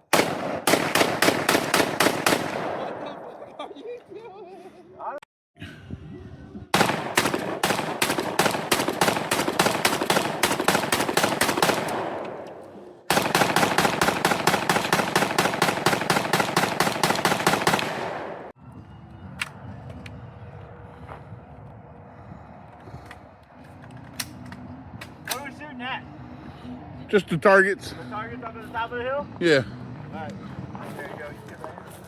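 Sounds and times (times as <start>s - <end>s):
rapid gunshots: 0.0s - 3.2s, 6.7s - 12.4s, 13.1s - 18.5s.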